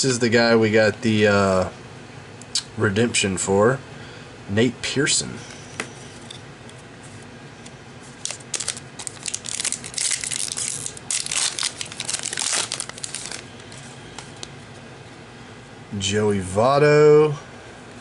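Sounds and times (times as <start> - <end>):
plastic wrapper crinkling and tearing: 8.2 - 14.5.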